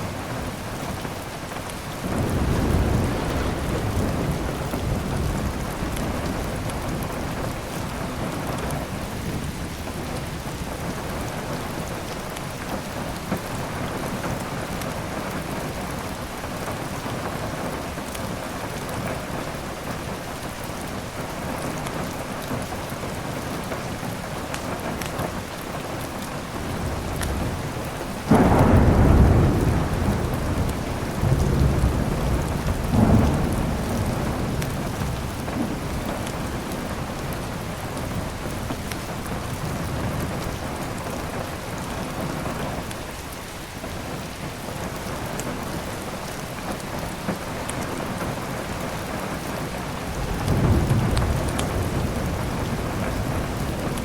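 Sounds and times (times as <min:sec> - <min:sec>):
heavy rain: 0:00.0 - 0:54.0
loud thunderclap: 0:02.0 - 0:07.6, 0:26.7 - 0:40.7, 0:50.0 - 0:54.0
thunder rumbling: 0:02.0 - 0:11.5, 0:26.5 - 0:43.0, 0:48.2 - 0:54.0.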